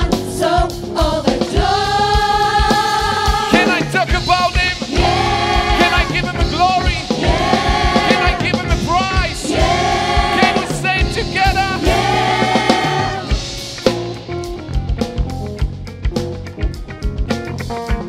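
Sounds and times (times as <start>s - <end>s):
gospel choir singing: 0.0s - 13.9s
live band with drum kit: 0.0s - 18.0s.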